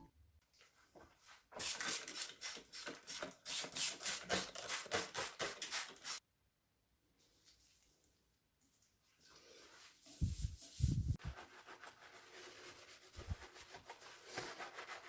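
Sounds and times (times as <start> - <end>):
scrubbing on a hard surface: 9.2 - 15.0.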